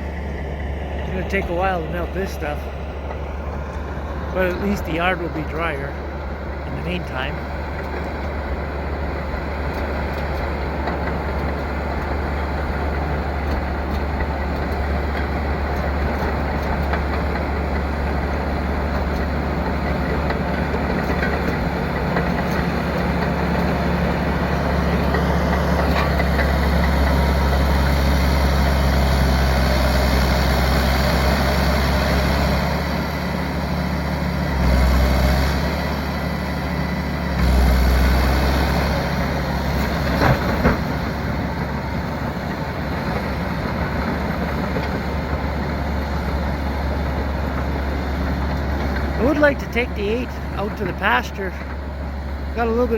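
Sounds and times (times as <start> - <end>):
bulldozer diesel engine running: 0.0 - 52.9.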